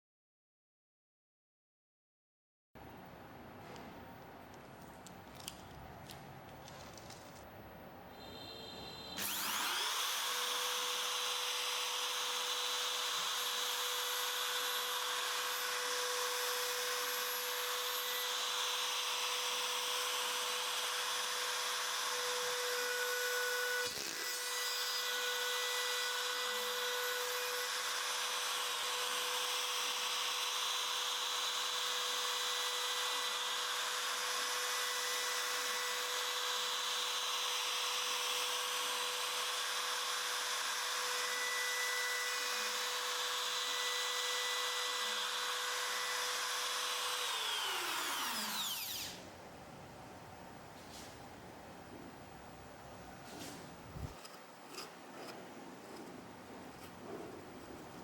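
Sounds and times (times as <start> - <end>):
router spindle high whine: 8.1 - 49.4.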